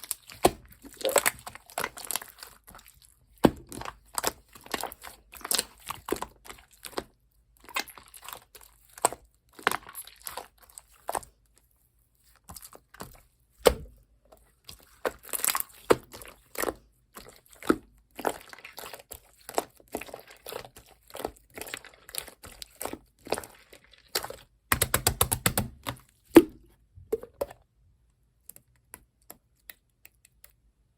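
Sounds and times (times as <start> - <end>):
slime popping and crackling: 0.0 - 2.7, 14.8 - 26.5.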